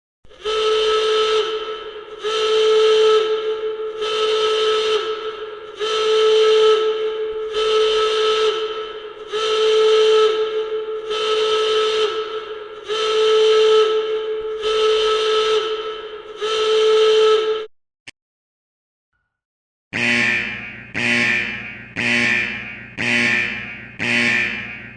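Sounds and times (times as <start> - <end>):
high-pitched siren blasts: 20.0 - 24.9.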